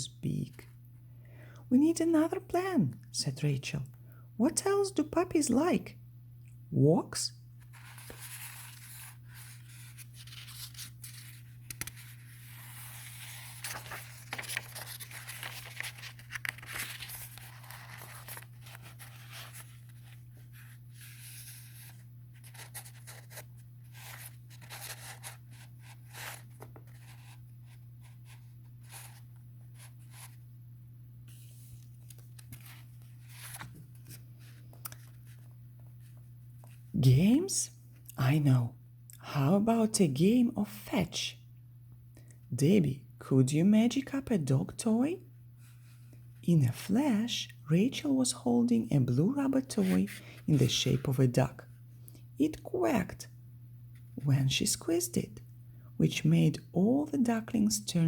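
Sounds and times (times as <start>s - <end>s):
paper rustling and scraping: 7.6s - 30.4s, 31.3s - 36.8s.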